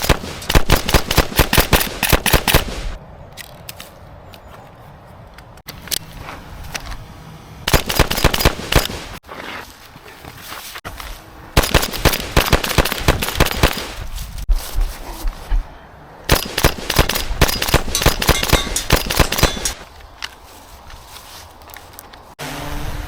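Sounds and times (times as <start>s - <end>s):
airsoft guns firing rapidly: 0.0s - 3.0s, 7.7s - 9.2s, 11.6s - 14.0s, 16.3s - 19.8s.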